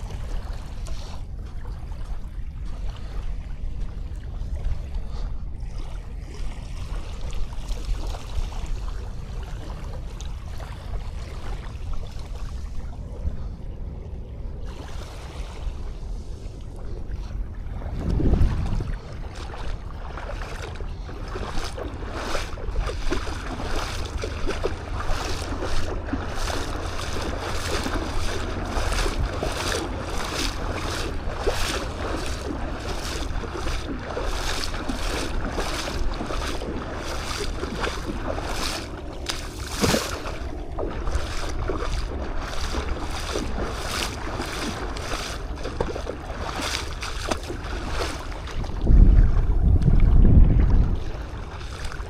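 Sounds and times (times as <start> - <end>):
surf washing: 0.0 - 52.0
wind rumble on microphone: 0.0 - 52.0
footsteps on sand: 18.0 - 48.8.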